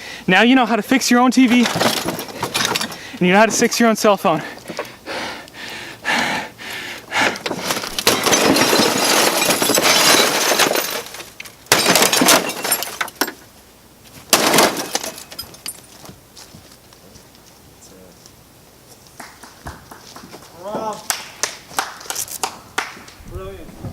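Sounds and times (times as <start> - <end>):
glass breaking and shattering: 1.4 - 3.7, 7.7 - 13.4, 14.3 - 15.9.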